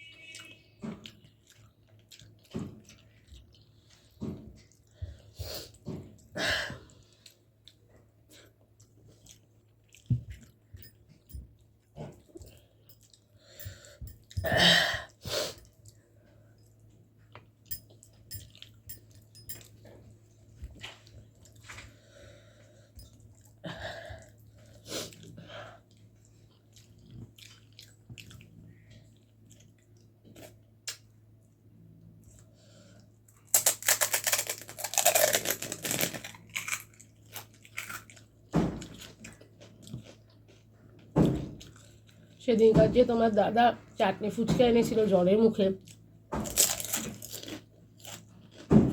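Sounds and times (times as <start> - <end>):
person chewing: 0.0 - 14.5, 15.3 - 19.9, 20.7 - 31.1, 32.2 - 42.4, 45.8 - 48.7.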